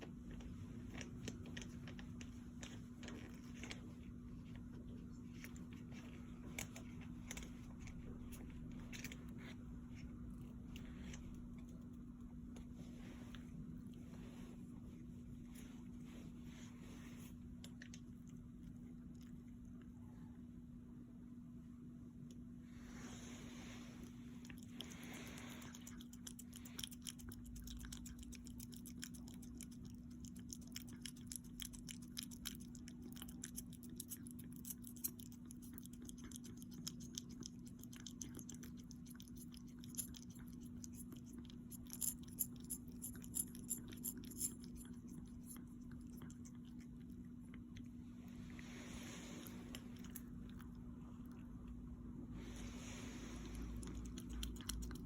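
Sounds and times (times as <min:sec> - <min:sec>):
low hum: 0:00.0 - 0:55.0
animal chewing: 0:24.0 - 0:51.8, 0:53.3 - 0:55.0.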